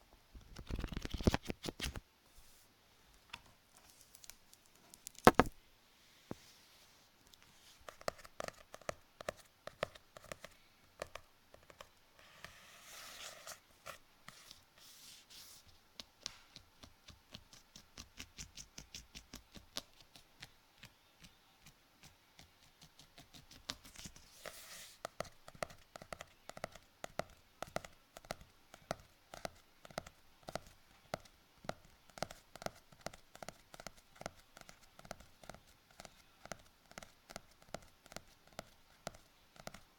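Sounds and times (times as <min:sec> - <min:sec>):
object scratched by hand: 0:12.2 - 0:15.7.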